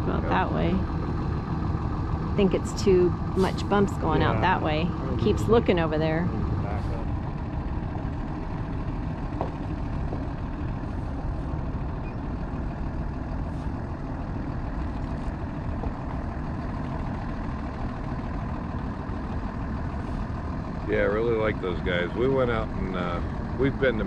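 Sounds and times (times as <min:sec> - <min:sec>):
motorhome engine running: 0:00.0 - 0:24.0.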